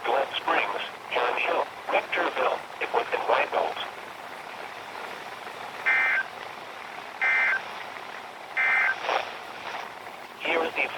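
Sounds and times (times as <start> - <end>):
radio receiver hiss: 0.0 - 3.9, 8.6 - 9.5, 10.3 - 10.9
warbling two-tone digital data bursts: 5.9 - 6.3, 7.2 - 7.6, 8.6 - 9.0.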